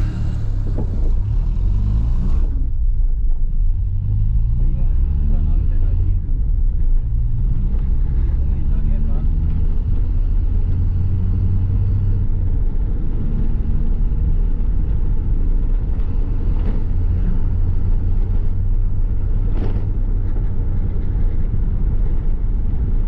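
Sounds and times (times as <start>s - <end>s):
car engine droning: 0.0s - 23.0s.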